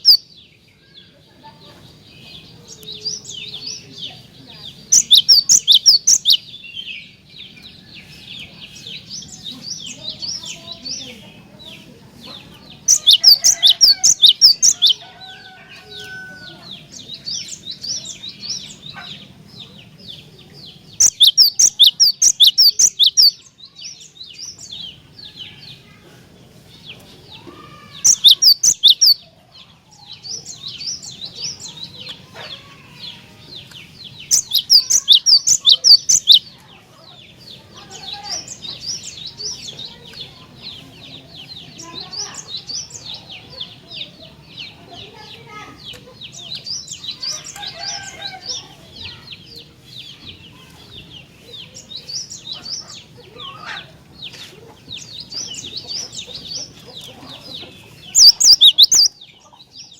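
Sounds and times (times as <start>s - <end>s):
bird chattering: 0.0s - 0.3s, 1.5s - 7.7s, 8.4s - 15.1s, 15.9s - 26.0s, 27.6s - 29.3s, 33.6s - 36.5s, 49.1s - 59.8s.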